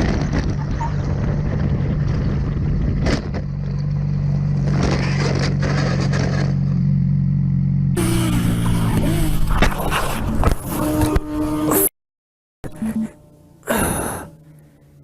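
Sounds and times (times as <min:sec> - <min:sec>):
road and wind noise: 0:00.0 - 0:11.9
vehicle engine droning: 0:00.0 - 0:11.9, 0:12.7 - 0:15.0
scraping noise: 0:08.1 - 0:11.9.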